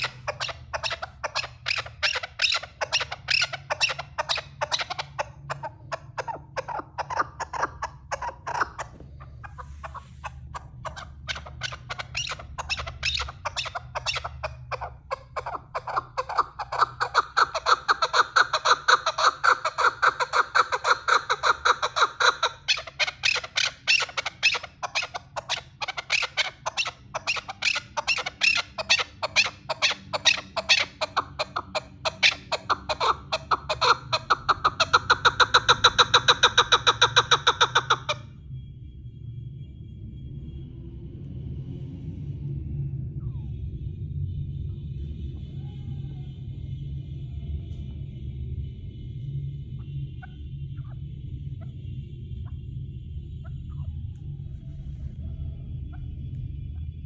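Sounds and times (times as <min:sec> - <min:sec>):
partridge calling: 0:00.0 - 0:38.2.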